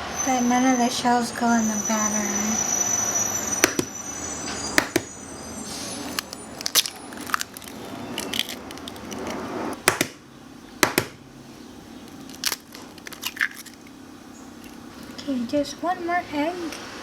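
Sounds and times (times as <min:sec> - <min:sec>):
eggshells cracking against bowl: 0:06.1 - 0:10.2, 0:12.1 - 0:14.0.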